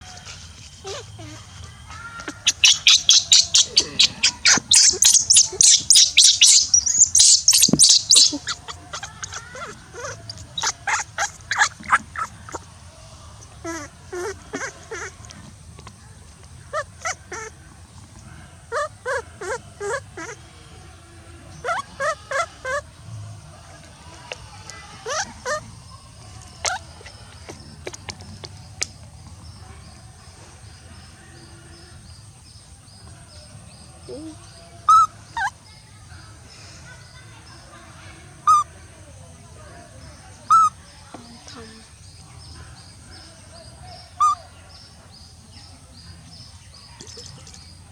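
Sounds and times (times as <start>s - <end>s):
baby monkey chirping: 0.8s - 12.6s, 13.6s - 16.0s, 16.7s - 18.0s, 18.7s - 20.4s, 21.5s - 22.9s, 24.0s - 29.6s, 34.0s - 35.8s, 38.4s - 38.7s, 40.5s - 41.9s, 44.1s - 44.5s
baby monkey squeaking: 0.8s - 12.6s, 13.6s - 16.0s, 16.7s - 17.6s, 18.7s - 20.4s, 21.6s - 22.9s, 24.1s - 25.8s, 26.5s - 29.0s, 34.1s - 35.5s, 38.5s - 38.7s, 40.5s - 40.8s, 44.2s - 44.4s
faint high chirp: 0.8s - 12.6s.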